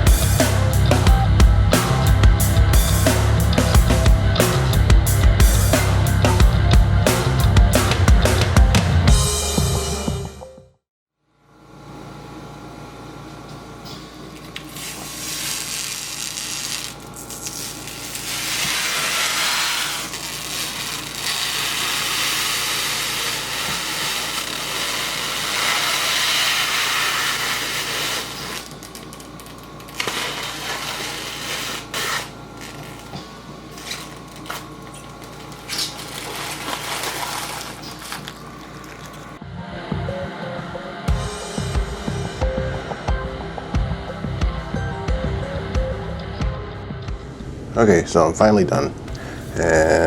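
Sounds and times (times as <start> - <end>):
low electrical hum: 11.3 - 39.4.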